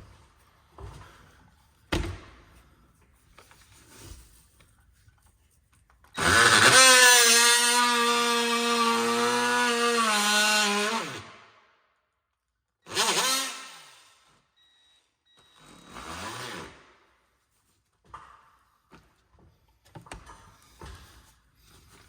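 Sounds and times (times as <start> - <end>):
power saw whining: 6.2 - 11.5, 12.9 - 14.4, 15.4 - 16.9.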